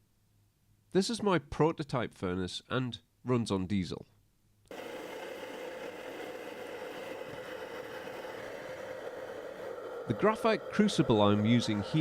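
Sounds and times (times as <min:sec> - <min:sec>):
furnace burner and blower rushing: 0:04.7 - 0:12.0.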